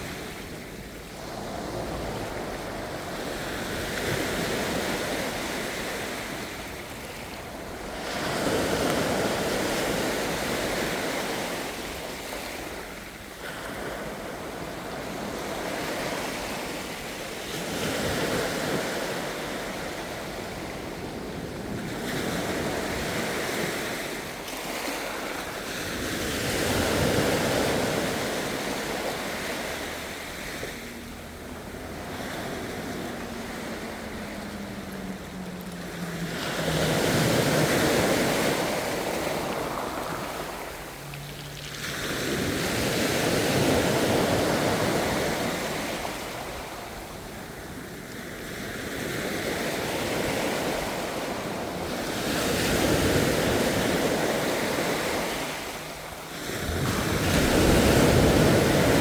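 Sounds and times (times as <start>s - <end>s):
ocean waves breaking on shore: 0.0s - 59.0s.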